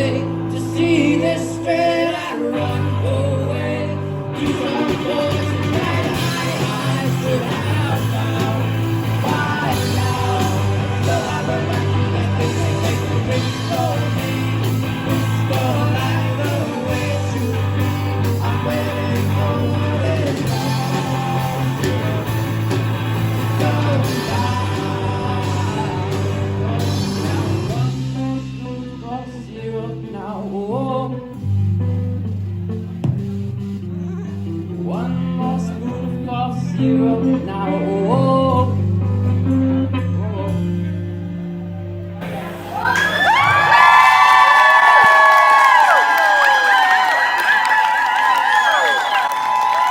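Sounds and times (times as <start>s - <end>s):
lead singer singing: 0.0s - 31.4s, 34.8s - 41.1s
bass guitar: 0.0s - 49.9s
rock band playing: 0.0s - 49.9s.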